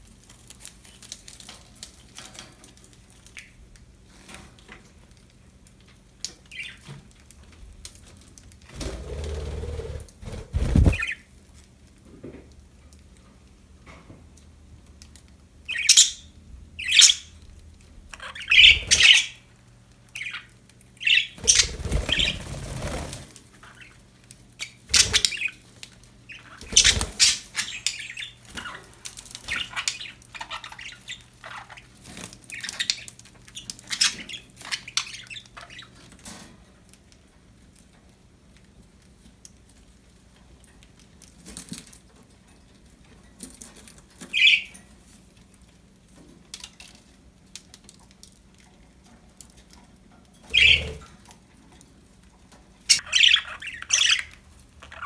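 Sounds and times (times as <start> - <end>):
wings fluttering: 8.6 - 11.3, 18.5 - 19.4, 21.4 - 23.9, 24.9 - 25.6, 26.5 - 27.7, 50.5 - 51.2
budgerigars chirping and squawking: 8.8 - 11.2, 15.7 - 17.3, 18.1 - 19.4, 20.2 - 24.0, 24.6 - 25.6, 26.3 - 28.9, 29.5 - 36.0, 44.3 - 44.8, 50.5 - 51.1, 52.9 - 55.0.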